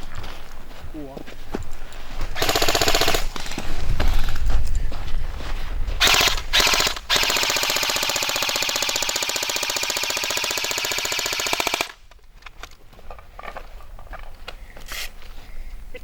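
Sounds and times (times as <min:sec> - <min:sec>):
airsoft gun firing full auto: 0:02.4 - 0:03.6, 0:06.0 - 0:12.0.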